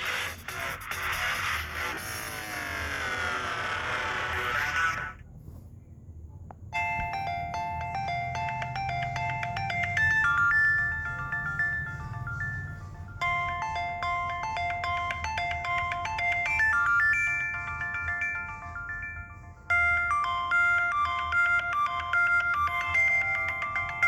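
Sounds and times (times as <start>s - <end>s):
electronic phone ringtone melody: 6.8s - 24.0s.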